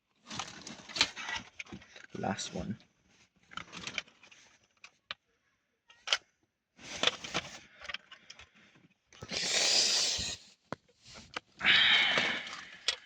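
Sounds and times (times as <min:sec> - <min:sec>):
hissing noise: 0:09.2 - 0:10.5.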